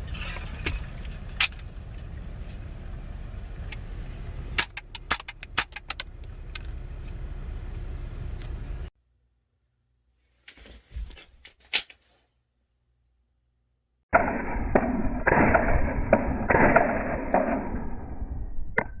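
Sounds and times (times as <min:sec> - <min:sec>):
light clicks and clatter: 0:00.5 - 0:08.9
gunshots: 0:14.2 - 0:18.2.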